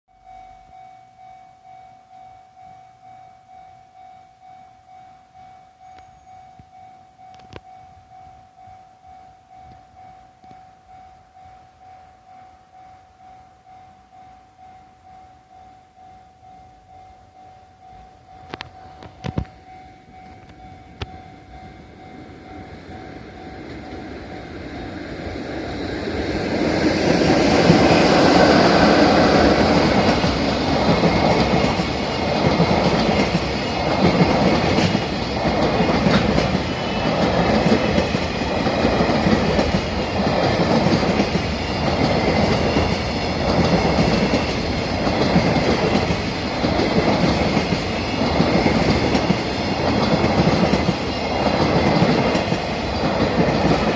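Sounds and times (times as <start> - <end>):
freight train passing: 2.6 - 53.9
wheels clacking over rail joints: 22.7 - 53.9.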